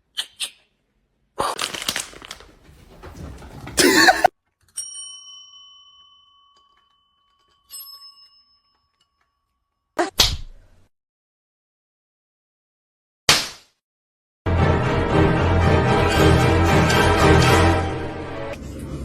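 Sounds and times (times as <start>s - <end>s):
rustling and clattering: 2.4s - 3.8s
small metal bell ringing: 4.8s - 9.4s.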